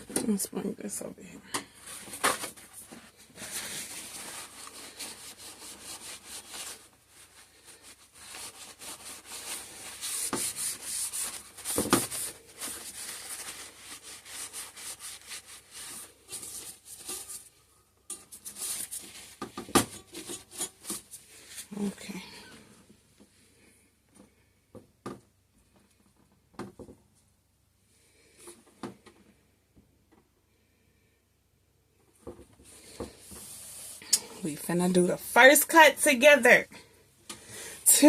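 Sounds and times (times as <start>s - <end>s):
soap loaf rubbing and scraping: 1.7s - 22.4s, 32.6s - 34.3s.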